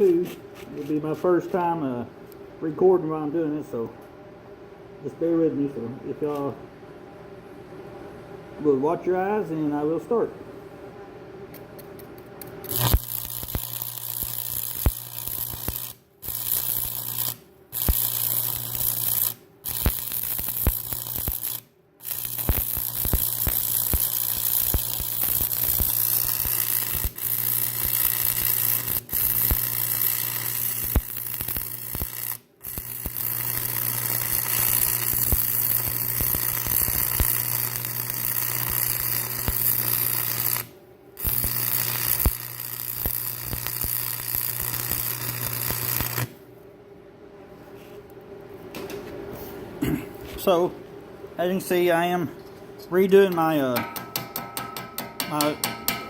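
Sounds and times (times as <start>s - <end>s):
welding arc crackling: 12.4s - 46.4s.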